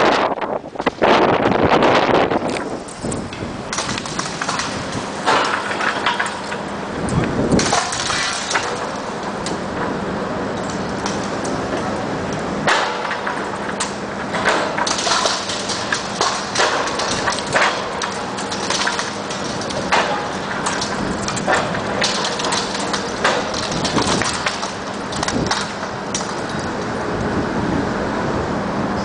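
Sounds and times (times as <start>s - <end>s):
diesel engine running: 0.6s - 29.0s
bricks breaking and falling: 3.7s - 6.6s, 7.5s - 9.1s, 12.7s - 26.8s.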